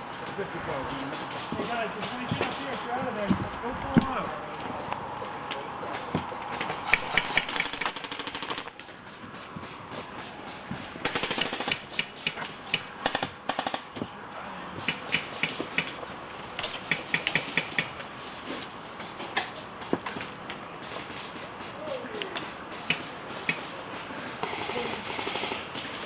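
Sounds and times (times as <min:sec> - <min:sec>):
airsoft guns firing: 0:06.9 - 0:08.7, 0:11.0 - 0:12.4, 0:13.0 - 0:13.9, 0:24.4 - 0:25.7.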